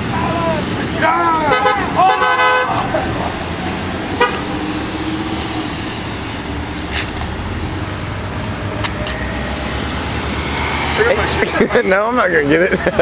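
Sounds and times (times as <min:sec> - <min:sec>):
road traffic going by: 0:00.0 - 0:13.0.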